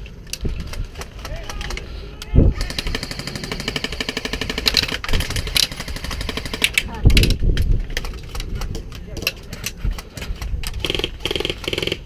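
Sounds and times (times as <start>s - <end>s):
wind buffeting microphone: 0.0s - 12.0s
airsoft rifle firing: 10.8s - 12.0s.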